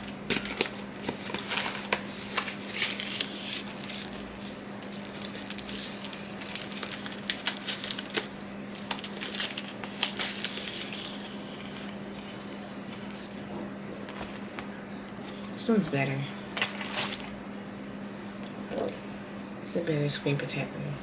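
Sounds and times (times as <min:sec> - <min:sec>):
plastic packaging crinkling: 0:00.0 - 0:12.0
steady low hum: 0:00.0 - 0:21.0.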